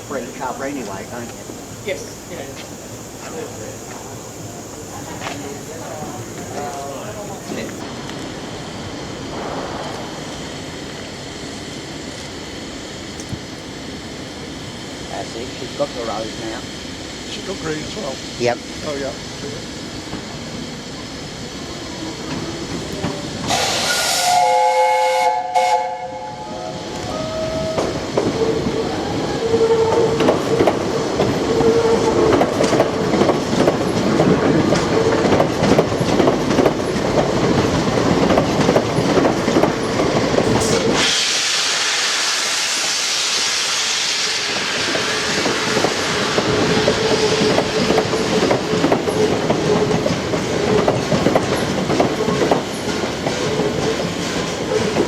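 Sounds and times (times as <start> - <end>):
locomotive and coaches moving: 0.0 - 24.6, 26.2 - 41.2, 44.4 - 55.0
strong steam hiss: 0.0 - 55.0
steam locomotive whistle: 23.5 - 30.2, 40.6 - 47.8.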